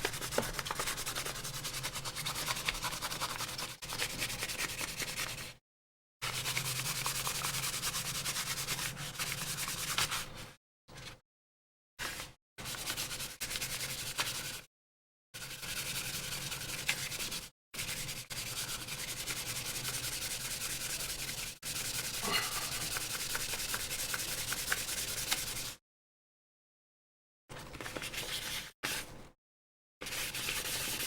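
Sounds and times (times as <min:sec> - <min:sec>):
sandpaper rubbing on plastic: 0:00.0 - 0:05.6, 0:15.6 - 0:25.8, 0:30.0 - 0:31.0.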